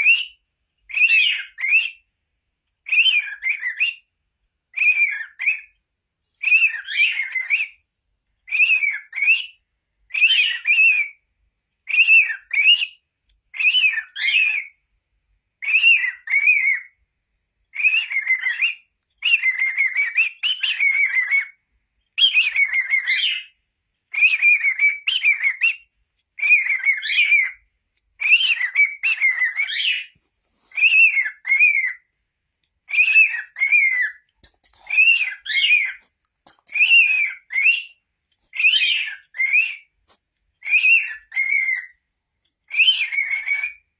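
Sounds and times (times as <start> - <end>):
cockatiel whistling: 0.0 - 2.0, 2.9 - 4.0, 4.8 - 5.7, 6.4 - 7.8, 8.5 - 11.2, 11.9 - 13.0, 13.6 - 14.7, 15.6 - 16.9, 17.8 - 21.6, 22.2 - 23.5, 24.1 - 25.8, 26.4 - 27.6, 28.2 - 32.0, 32.9 - 36.0, 36.7 - 39.9, 40.6 - 41.9, 42.7 - 43.9.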